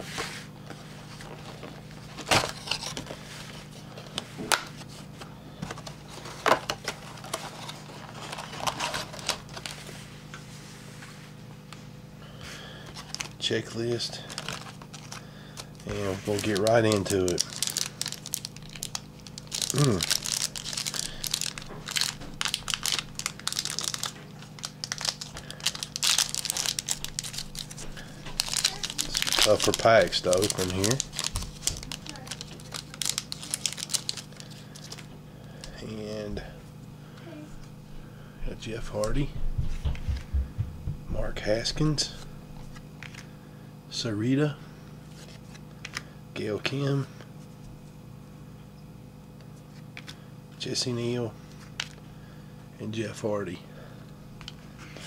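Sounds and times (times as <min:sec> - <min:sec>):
packaging crinkling and crackling: 0:05.7 - 0:10.0, 0:12.9 - 0:35.1, 0:51.4 - 0:52.0.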